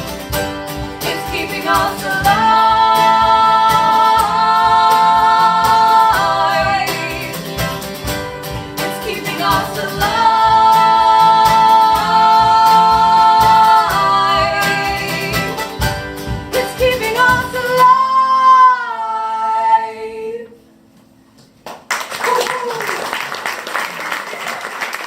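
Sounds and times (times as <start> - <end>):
strummed acoustic guitar: 0.0 - 18.8
woman singing: 1.0 - 7.6, 8.8 - 15.7, 16.5 - 20.6
audience applause: 21.6 - 25.0.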